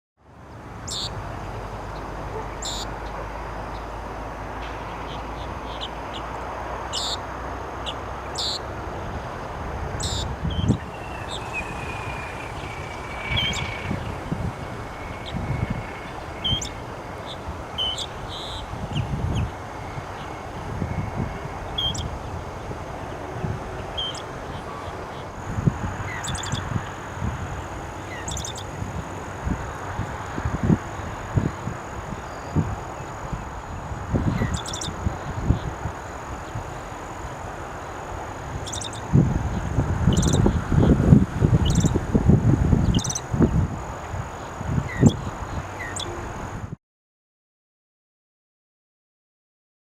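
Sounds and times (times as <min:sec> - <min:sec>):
low rumbling noise: 0:02.9 - 0:42.9.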